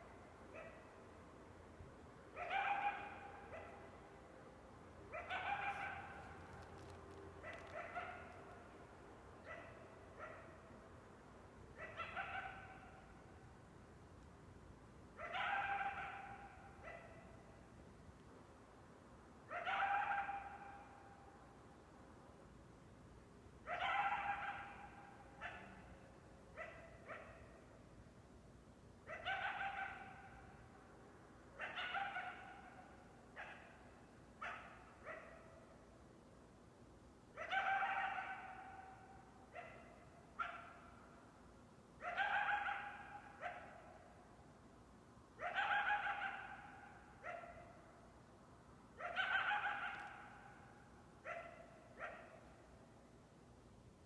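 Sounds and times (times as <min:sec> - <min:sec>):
coyote high calls: 0:05.1 - 0:08.4, 0:45.4 - 0:47.7.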